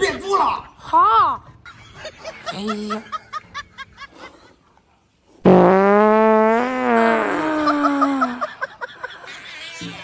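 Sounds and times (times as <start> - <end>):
fart sound effect: 5.4 - 8.4.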